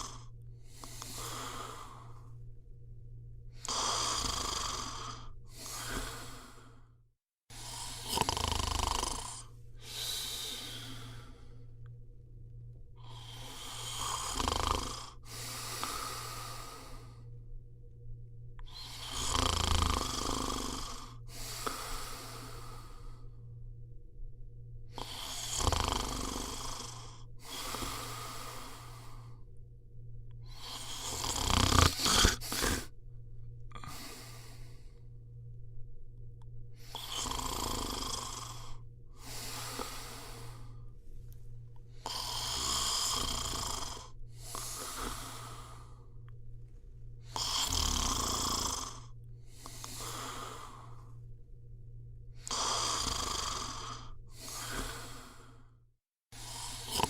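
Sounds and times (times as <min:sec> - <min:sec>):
person snoring: 0:00.0 - 0:02.4, 0:03.5 - 0:11.8, 0:13.0 - 0:17.3, 0:18.6 - 0:23.4, 0:24.9 - 0:29.5, 0:30.4 - 0:33.0, 0:33.7 - 0:35.1, 0:36.8 - 0:40.9, 0:42.0 - 0:46.3, 0:47.2 - 0:51.2, 0:52.4 - 0:57.0.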